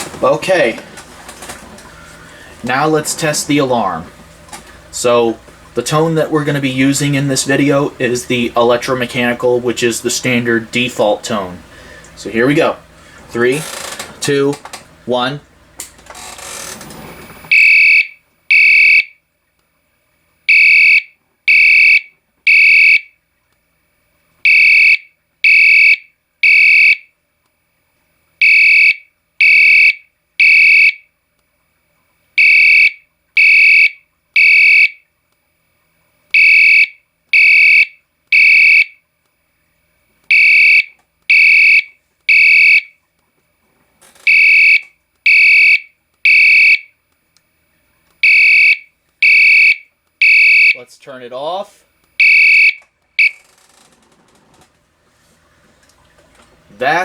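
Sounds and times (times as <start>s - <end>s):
fire alarm horn pulses: 16.2s - 19.3s, 20.1s - 23.5s, 24.4s - 27.2s, 28.3s - 31.2s, 31.9s - 35.1s, 36.3s - 39.1s, 40.2s - 43.1s, 44.2s - 47.0s, 48.2s - 53.6s.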